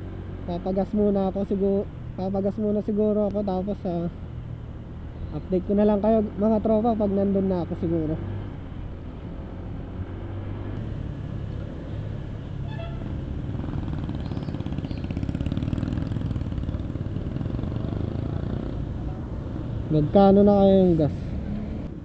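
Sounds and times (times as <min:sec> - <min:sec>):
motorcycle engine running: 0:12.9 - 0:19.2.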